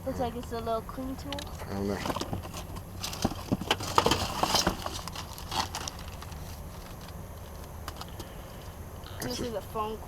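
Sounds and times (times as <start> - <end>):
rustling: 1.9 - 8.8
hard plastic items clattering: 2.0 - 7.2.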